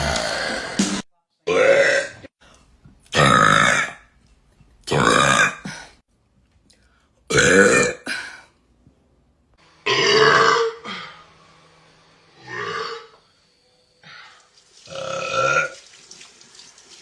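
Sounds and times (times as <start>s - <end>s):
person burping loudly: 0.0s - 2.3s, 3.2s - 4.0s, 4.9s - 5.9s, 7.3s - 8.4s, 9.8s - 11.1s, 14.9s - 15.8s.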